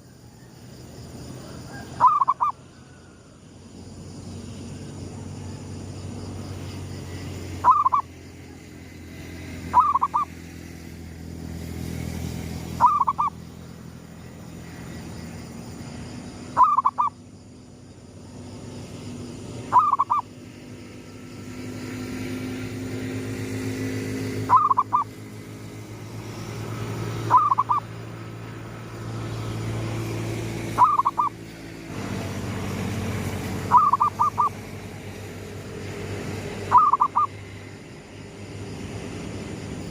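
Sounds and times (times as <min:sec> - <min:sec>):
dove cooing: 0:01.7 - 0:03.0, 0:07.6 - 0:08.0, 0:09.7 - 0:10.3, 0:12.8 - 0:13.3, 0:16.6 - 0:17.1, 0:19.7 - 0:20.2, 0:24.4 - 0:25.2, 0:27.2 - 0:27.9, 0:30.8 - 0:31.3, 0:33.7 - 0:34.6, 0:36.7 - 0:37.4.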